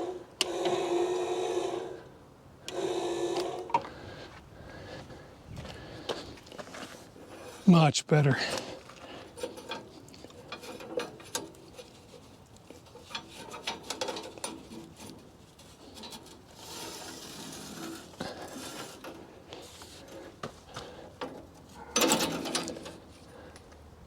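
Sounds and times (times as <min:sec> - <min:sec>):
metal clicks and rubbing: 0:09.3 - 0:20.2.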